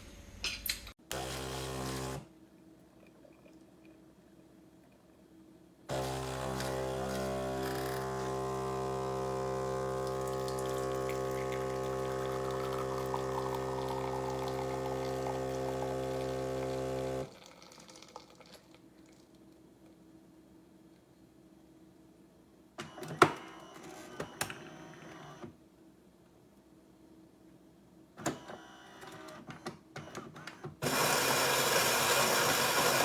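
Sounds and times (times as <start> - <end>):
espresso machine pump humming: 5.9 - 17.3, 30.8 - 33.0
liquid pouring: 9.9 - 19.5.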